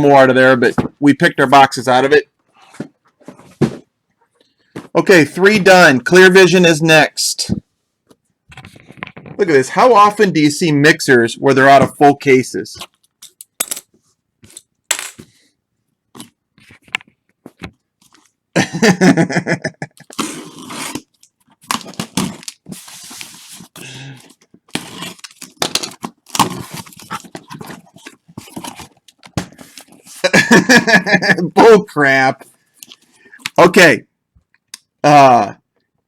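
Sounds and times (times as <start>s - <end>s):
card boxes scraping and clicking: 20.8s - 30.3s.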